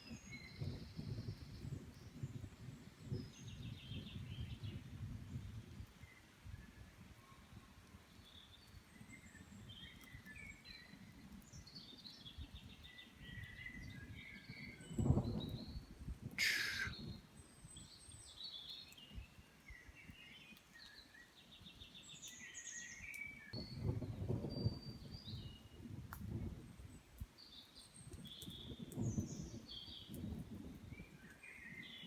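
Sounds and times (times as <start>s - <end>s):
short sharp hiss: 16.4s - 16.9s
birds chirping and trilling: 16.4s - 17.0s.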